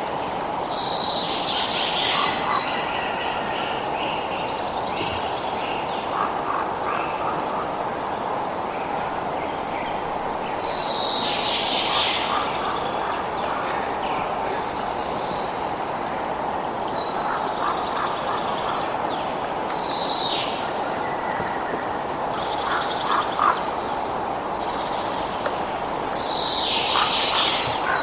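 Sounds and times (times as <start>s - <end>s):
birds calling: 9.0s - 28.0s.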